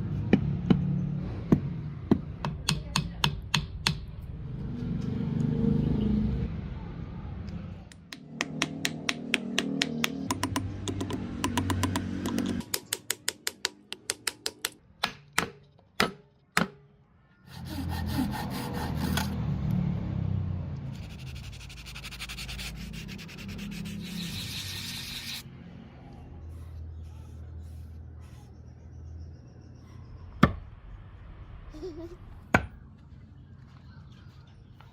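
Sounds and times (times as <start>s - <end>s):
sanding on wood: 17.5s - 19.4s, 20.9s - 25.4s.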